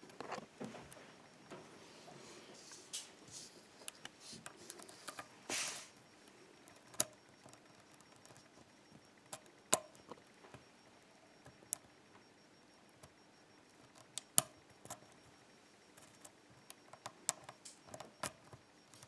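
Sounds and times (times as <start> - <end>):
lock pick ticking: 6.6 - 10.7, 13.8 - 15.3, 16.0 - 19.0.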